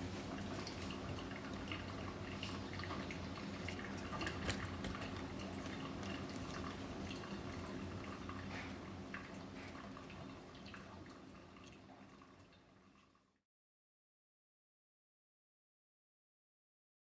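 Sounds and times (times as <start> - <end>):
coffee dripping into carafe: 0.2 - 13.3.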